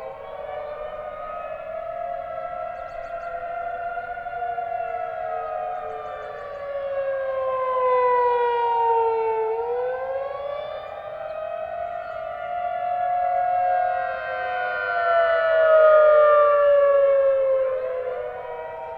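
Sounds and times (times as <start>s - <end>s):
distant warning siren: 0.0s - 18.9s.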